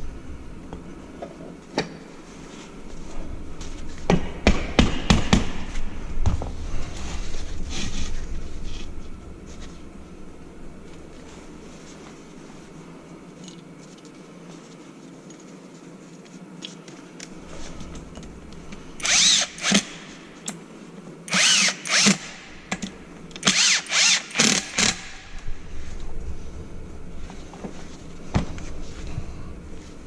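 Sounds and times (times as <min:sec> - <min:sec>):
cordless drill spinning: 0:19.0 - 0:20.0, 0:21.3 - 0:22.4, 0:23.4 - 0:25.3.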